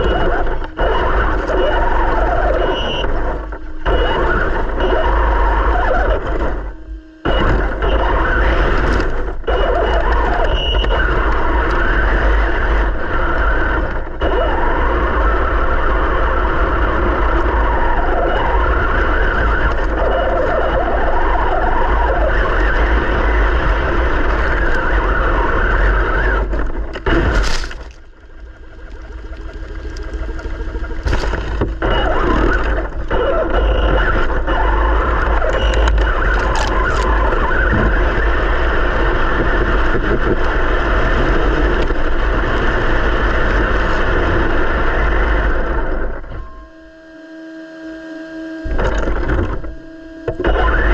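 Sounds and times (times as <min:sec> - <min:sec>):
low rumble and ground noise: 0:00.0 - 0:46.9, 0:48.6 - 0:50.9
electric motor and gearbox whine: 0:00.0 - 0:50.9.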